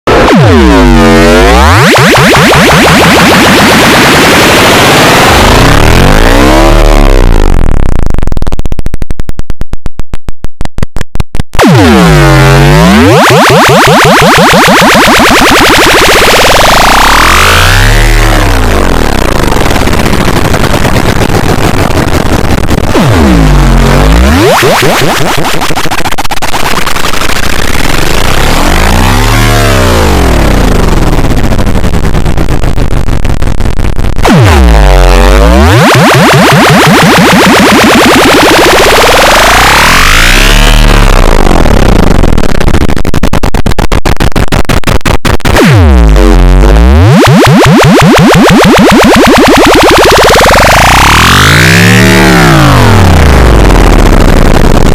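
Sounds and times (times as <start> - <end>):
synthesized sweeping tones: 0.1 - 7.8, 11.6 - 21.9, 22.8 - 31.3, 45.6 - 54.3
distorted electronic buzzing swoops: 0.1 - 8.5, 11.6 - 54.9.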